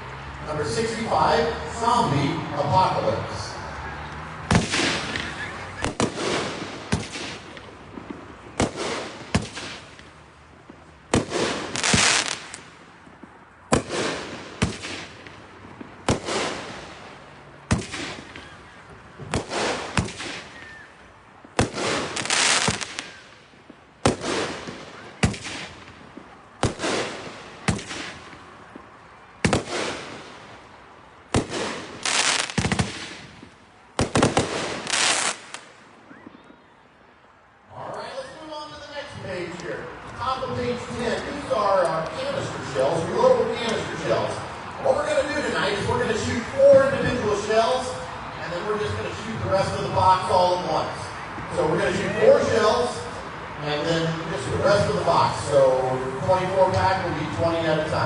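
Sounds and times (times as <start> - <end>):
firework cake shots: 4.2 - 20.9, 21.5 - 30.7, 31.3 - 36.6.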